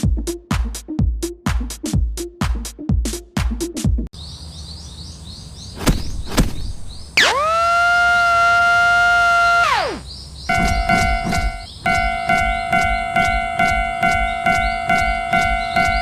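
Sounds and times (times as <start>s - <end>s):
electronic dance beat: 0.0s - 4.1s, 10.6s - 16.0s
bird-like chirps: 4.2s - 7.4s, 9.7s - 16.0s
siren wailing: 7.2s - 16.0s
sharp knocks: 10.5s - 16.0s.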